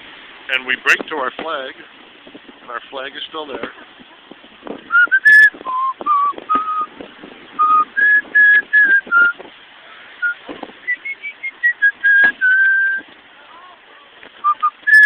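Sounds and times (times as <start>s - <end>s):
person whistling a tune: 4.9s - 6.9s, 7.6s - 9.4s, 10.2s - 13.0s, 14.4s - 15.0s.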